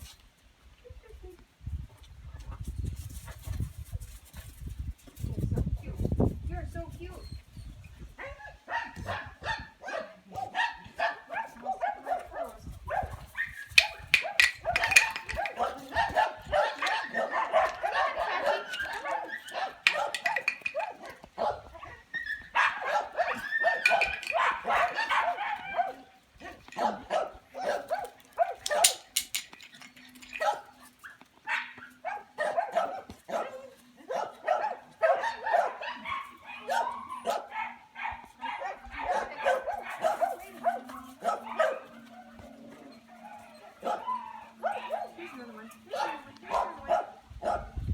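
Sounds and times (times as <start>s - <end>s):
puppies yapping: 13.4s - 33.5s, 34.6s - 46.8s.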